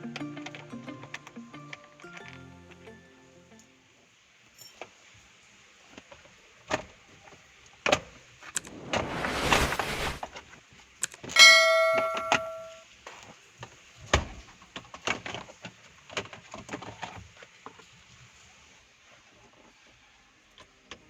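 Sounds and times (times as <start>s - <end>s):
metallic clang: 11.4s - 12.8s.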